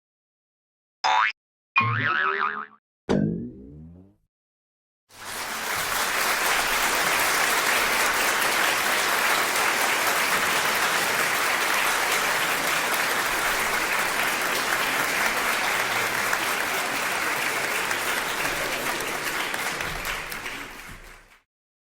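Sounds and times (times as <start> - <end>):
audience applause: 5.1 - 21.4.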